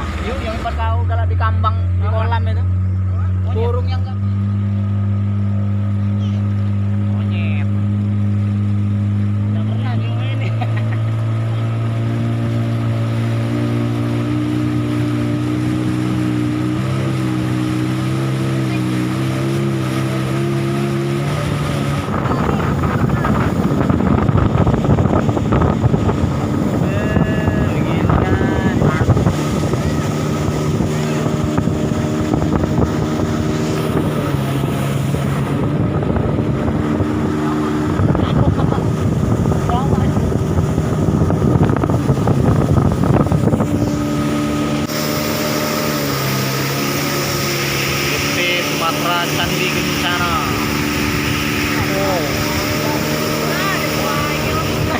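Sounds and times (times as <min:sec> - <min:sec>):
motorboat engine humming: 0:00.0 - 0:54.9
water noise: 0:00.0 - 0:54.9
wind buffeting microphone: 0:11.0 - 0:48.3, 0:49.4 - 0:54.9.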